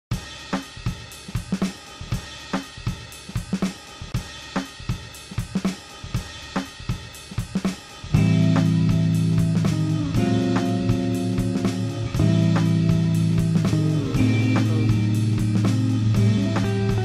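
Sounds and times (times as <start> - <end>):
drum kit playing a steady beat: 0.1 - 17.0.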